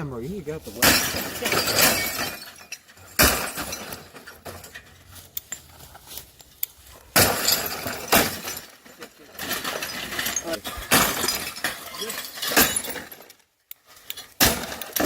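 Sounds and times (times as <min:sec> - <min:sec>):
glass and plastic debris clattering: 0:00.6 - 0:06.1, 0:07.1 - 0:15.0
heavy blows smashing television: 0:00.7 - 0:05.0, 0:07.1 - 0:13.3, 0:14.2 - 0:15.0
small glass clinks: 0:07.3 - 0:13.3.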